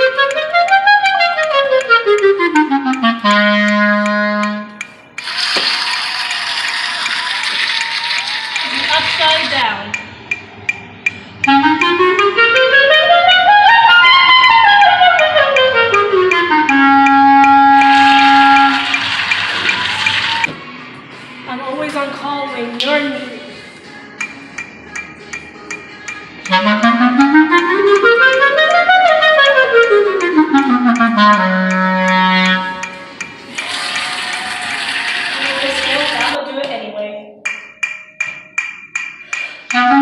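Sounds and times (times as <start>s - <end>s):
steady ticking: 0.0s - 5.4s, 8.6s - 13.1s, 14.0s - 19.8s, 24.1s - 34.4s, 37.4s - 39.9s
wind instrument playing a scale: 0.0s - 5.4s, 11.4s - 20.5s, 26.4s - 33.2s, 39.7s - 40.0s.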